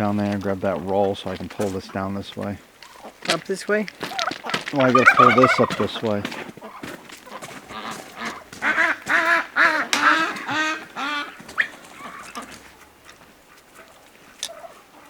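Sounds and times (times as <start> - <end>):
yard noise: 0.0 - 15.0
duck quacking: 4.1 - 12.8.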